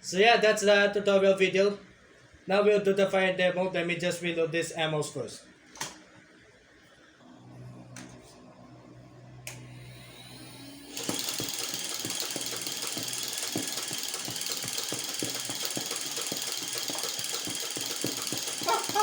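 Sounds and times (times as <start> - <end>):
toy blaster motor hum: 9.6 - 19.0
mechanical clatter with clicks: 10.9 - 19.0.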